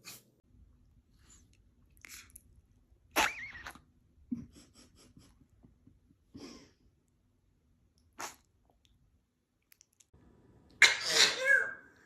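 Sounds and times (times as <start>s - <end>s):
animal sneezing: 8.2s - 8.4s, 10.8s - 11.6s.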